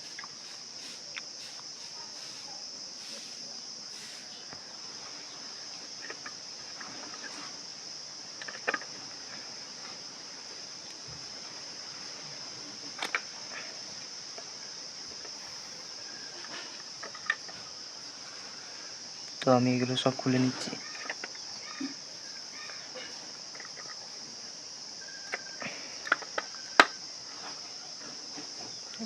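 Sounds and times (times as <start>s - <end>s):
plastic parts clicking: 13.0s - 13.3s, 20.9s - 21.4s, 25.2s - 27.0s.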